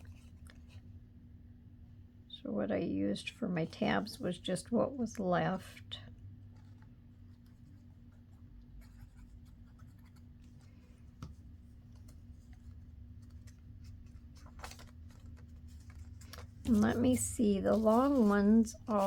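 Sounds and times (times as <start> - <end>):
faint steady hum: 0.0 - 19.0
paper rustling: 6.4 - 19.0.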